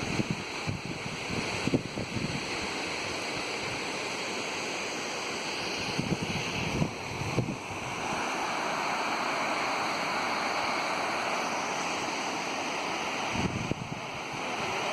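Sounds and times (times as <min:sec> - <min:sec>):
wind buffeting microphone: 0:00.0 - 0:02.5, 0:05.9 - 0:08.0, 0:13.3 - 0:14.5
waterfall rushing: 0:06.7 - 0:14.9.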